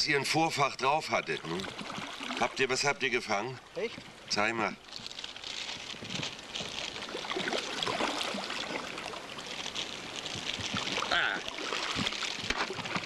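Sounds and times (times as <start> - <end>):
water splashing from paddling: 0.7 - 4.3, 5.1 - 13.0.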